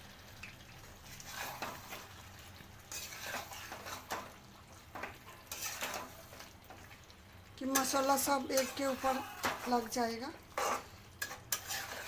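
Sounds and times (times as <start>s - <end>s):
spoon scraping a pot: 1.1s - 2.1s, 2.9s - 4.3s, 5.0s - 6.5s, 7.7s - 9.9s, 10.5s - 12.0s.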